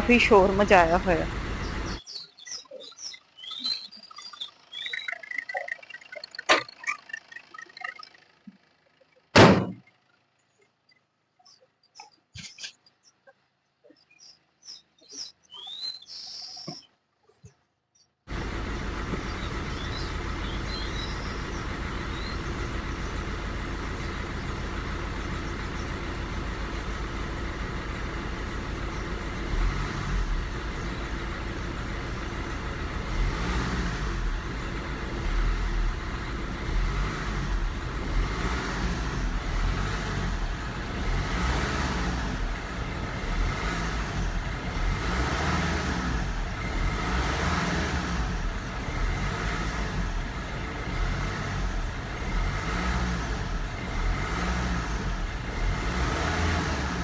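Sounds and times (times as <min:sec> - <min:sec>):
car engine running: 0:00.0 - 0:02.0, 0:18.3 - 0:57.0.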